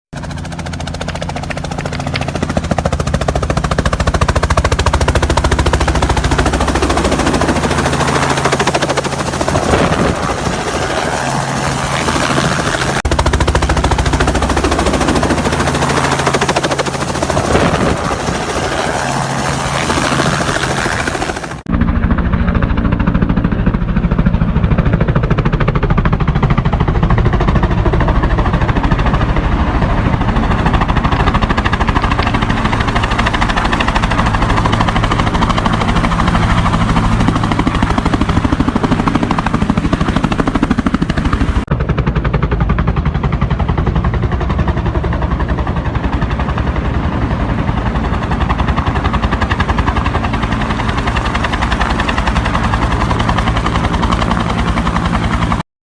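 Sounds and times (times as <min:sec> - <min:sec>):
wind buffeting microphone: 0:00.4 - 0:41.9.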